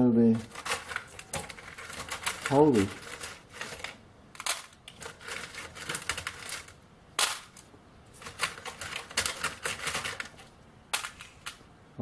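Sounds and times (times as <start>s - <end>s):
small metal burrs rattling in box: 0.4s - 6.8s, 8.2s - 11.2s.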